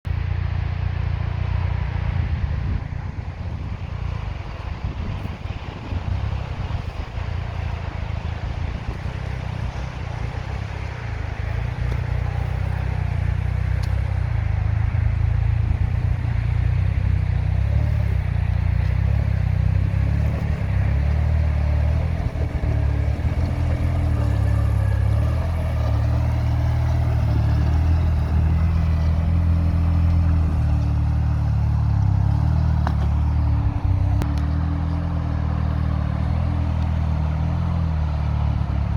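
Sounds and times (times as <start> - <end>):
off-road vehicle engine revving: 0.9 - 38.9.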